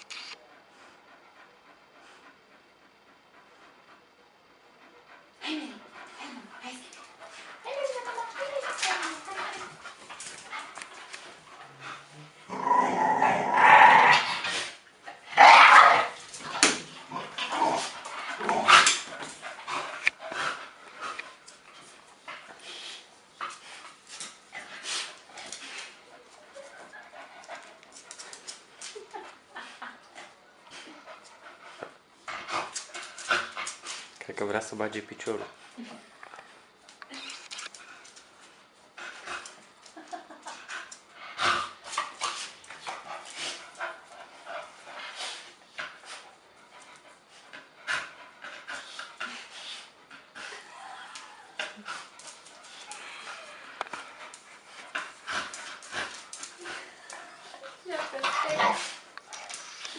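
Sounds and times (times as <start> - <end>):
dog panting: 0.4 - 12.3, 51.6 - 59.9
dogs panting: 0.4 - 12.5, 16.2 - 36.7, 37.7 - 59.9.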